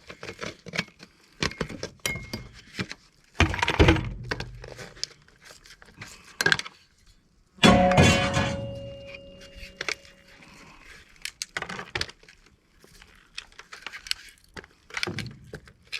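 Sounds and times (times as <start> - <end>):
loud ringing metal clang: 7.6 - 10.0
scrap metal knocking and clanking: 7.6 - 10.0.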